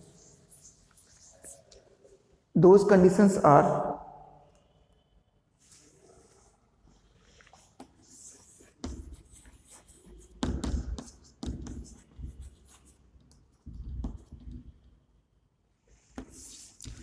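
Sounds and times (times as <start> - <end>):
writing strokes on a board: 0.0 - 1.8, 7.5 - 14.8, 16.0 - 17.0.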